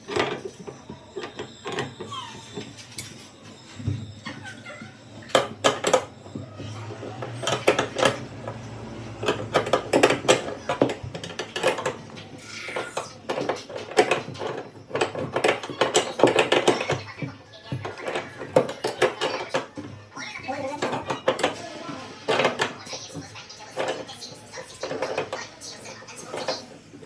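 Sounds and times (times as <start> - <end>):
metal hardware clinking and knocking: 0.0 - 19.9.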